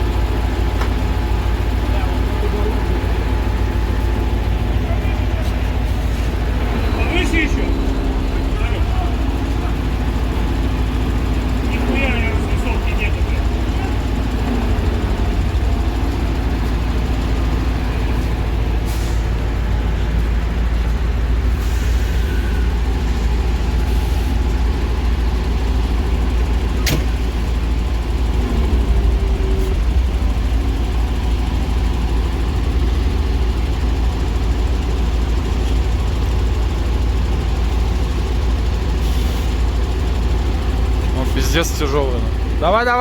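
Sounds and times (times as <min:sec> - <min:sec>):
heavy truck engine running: 0:00.0 - 0:43.0.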